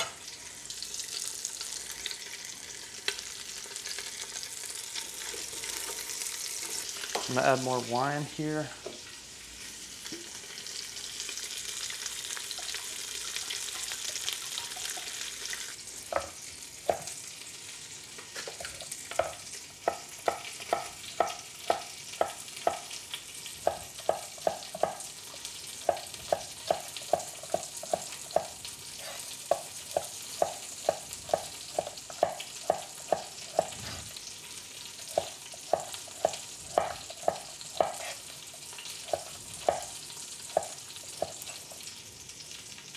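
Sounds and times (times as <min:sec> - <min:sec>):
food sizzling in a pan: 0:00.0 - 0:42.9
utensil knocking against a pan: 0:29.5 - 0:33.8.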